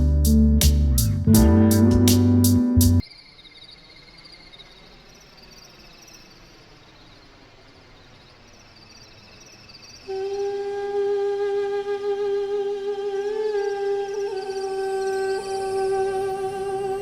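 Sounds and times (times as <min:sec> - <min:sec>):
guitar music: 0:00.0 - 0:03.0
faint cricket chirping: 0:03.0 - 0:17.0.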